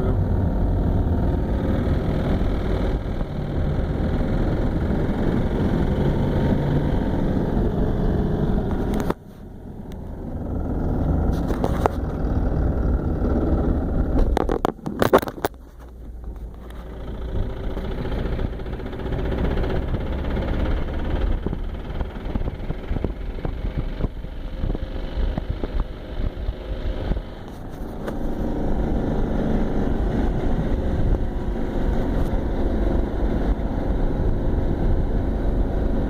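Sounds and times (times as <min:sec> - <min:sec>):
engine sharp clatters: 0:09.9 - 0:36.0.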